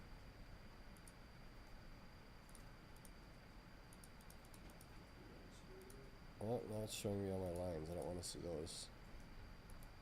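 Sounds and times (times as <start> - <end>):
faint high whine: 0.0 - 10.0
computer mouse clicks: 0.9 - 1.2, 2.4 - 3.2, 3.9 - 5.0, 5.8 - 6.0, 7.4 - 8.2, 9.2 - 10.0.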